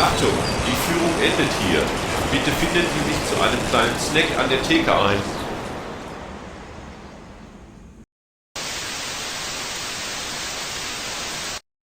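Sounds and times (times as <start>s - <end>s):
white-noise static hiss: 8.6s - 11.6s.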